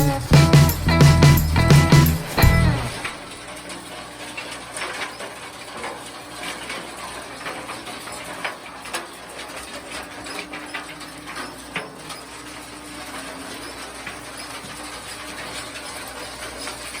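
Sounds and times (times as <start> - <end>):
machine humming: 0.0 - 3.4
small rattles and clicks: 3.0 - 17.0.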